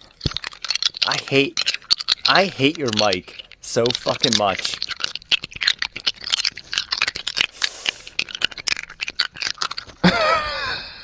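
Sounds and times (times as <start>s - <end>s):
person speaking: 1.0s - 4.8s, 7.5s - 8.2s
short hiss: 7.6s - 8.1s.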